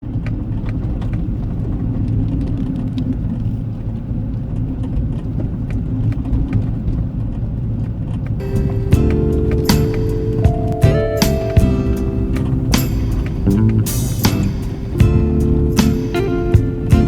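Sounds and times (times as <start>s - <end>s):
vehicle rumble: 0.0s - 17.0s
music: 8.4s - 17.0s.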